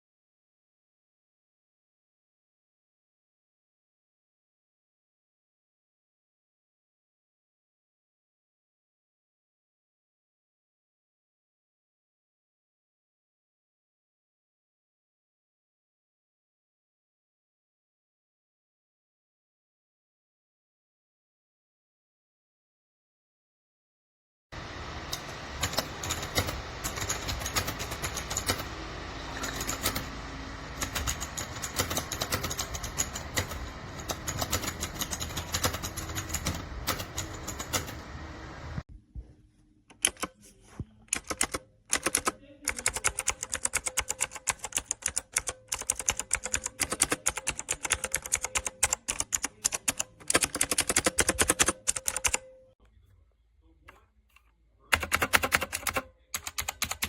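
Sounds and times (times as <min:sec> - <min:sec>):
steady background noise: 0:24.6 - 0:38.8
mechanical keyboard typing: 0:25.1 - 0:38.2, 0:39.9 - 0:40.4, 0:41.1 - 0:52.5, 0:54.9 - 0:57.0.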